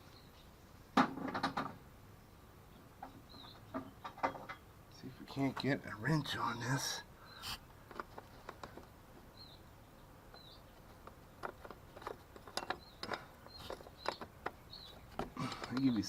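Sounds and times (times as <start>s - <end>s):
small bird chirping: 2.2s - 5.1s, 6.4s - 16.0s.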